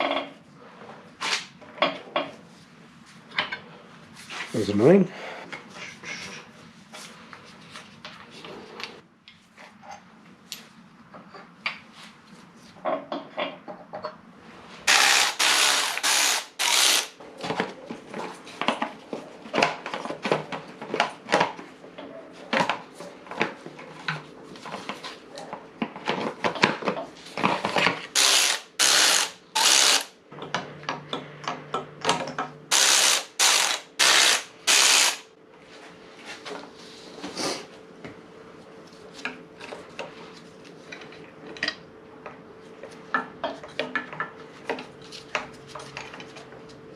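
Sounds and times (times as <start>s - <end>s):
ratchet wrench clicking: 14.9s - 17.1s, 28.2s - 30.1s, 32.7s - 35.2s.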